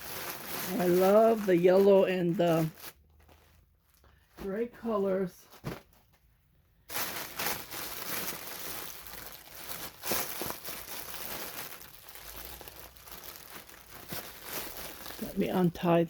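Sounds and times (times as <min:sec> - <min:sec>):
packaging rustling and crinkling: 0:00.0 - 0:04.7, 0:05.4 - 0:15.9.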